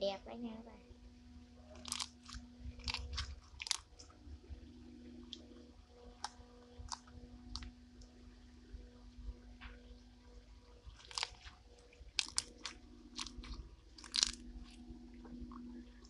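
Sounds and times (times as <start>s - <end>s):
slime with foam beads crackling: 1.8s - 4.1s, 10.9s - 15.0s.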